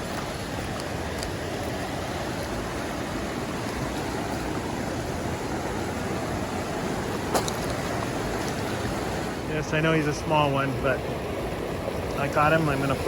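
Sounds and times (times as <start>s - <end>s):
mountain stream rushing: 0.0s - 13.0s.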